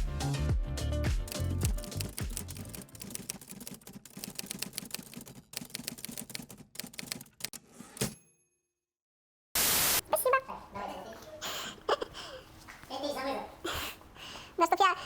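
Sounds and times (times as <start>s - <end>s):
background music: 0.0s - 3.5s
rapid irregular clicking: 1.3s - 7.6s.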